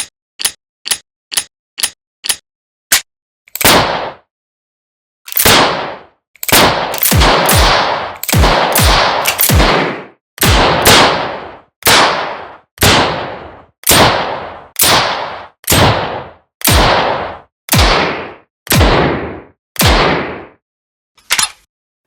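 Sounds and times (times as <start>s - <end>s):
revolver gunshots echoing: 3.6s - 4.2s, 5.4s - 20.6s.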